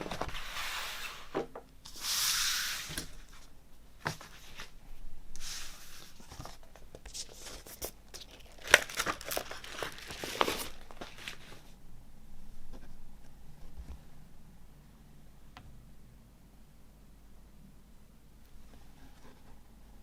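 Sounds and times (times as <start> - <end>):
packaging rustling and crinkling: 6.0 - 11.7.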